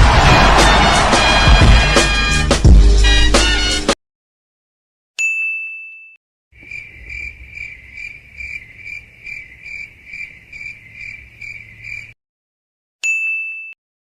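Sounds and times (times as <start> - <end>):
bell-like ding: 5.2 - 6.2, 13.0 - 13.8
crickets chirping: 6.6 - 12.2.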